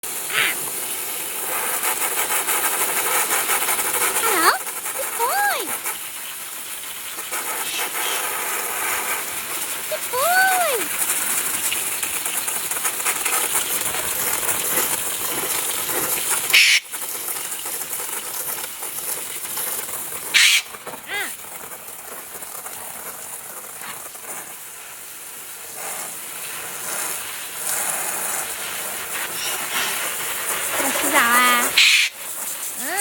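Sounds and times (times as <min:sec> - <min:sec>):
steady hiss: 0:00.0 - 0:33.0
parrot harsh screeches: 0:00.3 - 0:00.6, 0:16.5 - 0:16.9, 0:20.3 - 0:21.3, 0:31.6 - 0:32.2
parrot warbling call: 0:00.3 - 0:00.6, 0:16.5 - 0:16.9, 0:20.4 - 0:21.3, 0:31.6 - 0:32.2.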